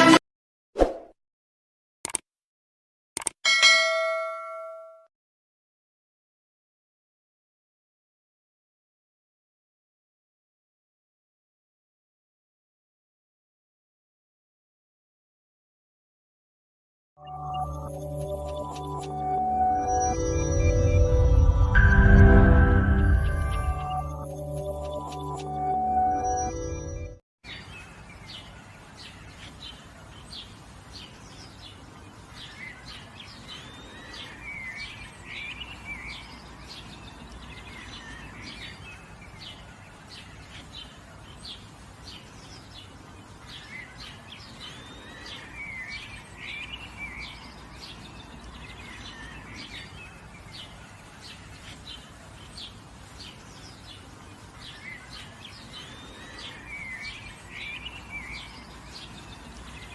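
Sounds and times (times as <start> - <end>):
warbling bird song: 17.2 - 22.1, 22.9 - 59.9
birds chirping: 17.2 - 59.9.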